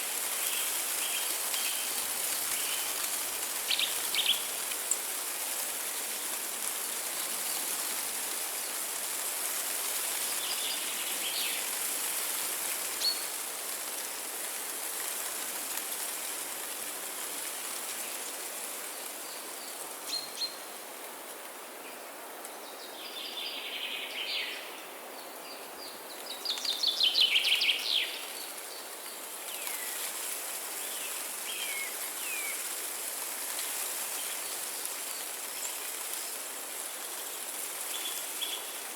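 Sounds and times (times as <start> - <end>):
wind through foliage: 0.0 - 38.9.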